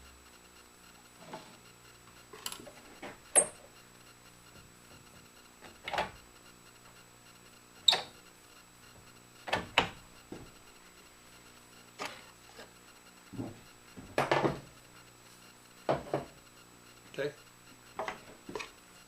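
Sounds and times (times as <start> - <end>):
wood and tools knocking: 15.9 - 16.3, 18.0 - 18.7.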